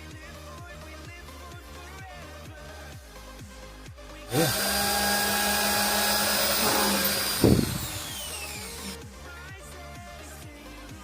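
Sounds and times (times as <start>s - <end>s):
background music with steady beat: 0.0s - 11.0s
drill trigger knock: 4.3s - 9.0s
electric drill whining: 4.3s - 9.0s.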